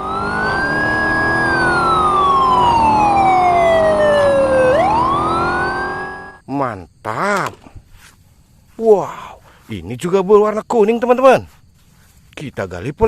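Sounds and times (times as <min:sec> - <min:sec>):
police siren wailing: 0:00.0 - 0:06.4.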